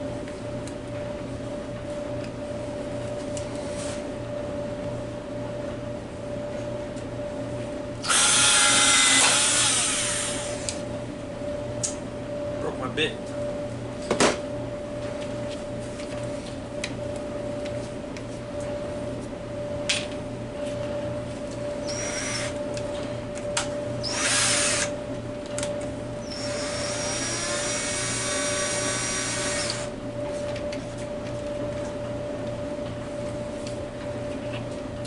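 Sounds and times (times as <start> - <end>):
steady hum: 0.0 - 35.0
power drill running: 8.0 - 10.8, 21.8 - 22.6, 24.0 - 25.0, 26.2 - 29.9.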